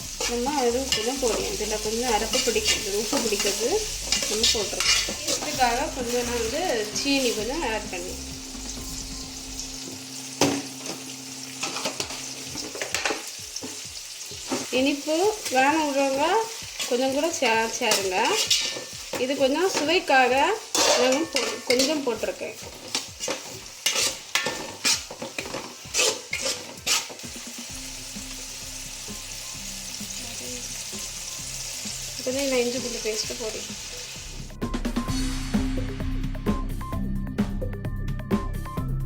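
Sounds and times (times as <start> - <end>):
metal spoon scraping a pan: 0.0 - 13.8, 14.4 - 27.7
vegetables sizzling in oil: 0.0 - 35.9.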